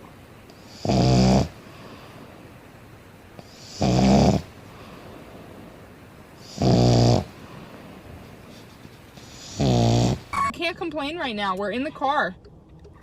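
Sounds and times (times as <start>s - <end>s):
pet snoring loudly: 0.7s - 1.6s, 3.5s - 4.5s, 6.4s - 7.4s, 9.3s - 10.3s
faint breath: 1.6s - 2.5s, 4.6s - 5.8s.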